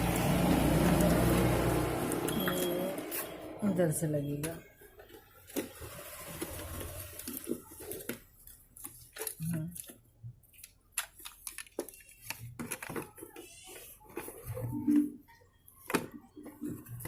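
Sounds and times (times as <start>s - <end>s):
plastic parts clicking and rattling: 6.4s - 17.0s.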